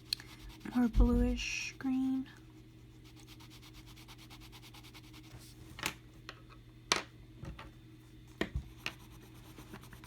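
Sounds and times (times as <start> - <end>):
pencil scratching on paper: 0.3 - 1.4, 2.6 - 5.3, 8.7 - 10.0.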